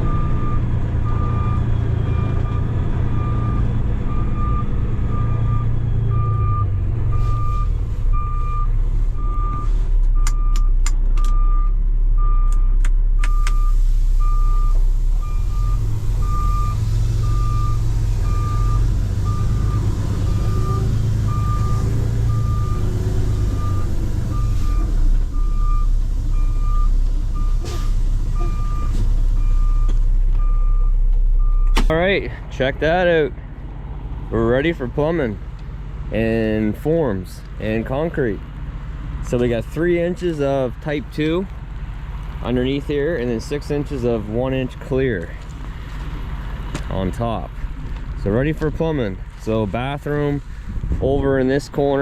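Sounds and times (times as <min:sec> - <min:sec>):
reversing alarm beeping: 0:00.0 - 0:31.8
diesel engine rumble: 0:00.0 - 0:52.0.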